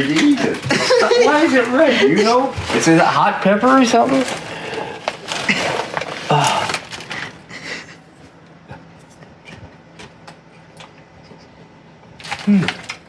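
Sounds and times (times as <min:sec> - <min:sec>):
bag rustling: 0:00.0 - 0:07.4.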